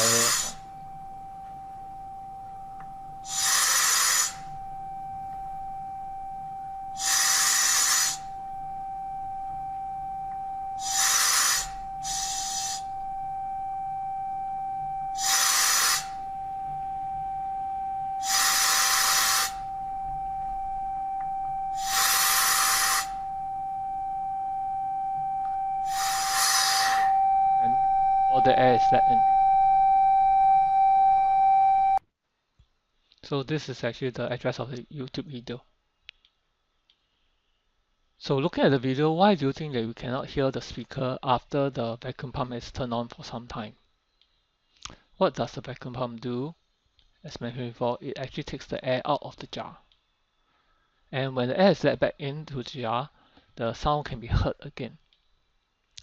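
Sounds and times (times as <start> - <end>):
air rushing through valve: 0.0 - 0.6, 3.2 - 4.5, 7.0 - 8.4, 10.8 - 13.0, 15.1 - 16.4, 18.2 - 19.8, 21.7 - 23.4, 25.8 - 27.2
steady high tone from loudspeaker: 0.0 - 3.3, 23.0 - 32.0.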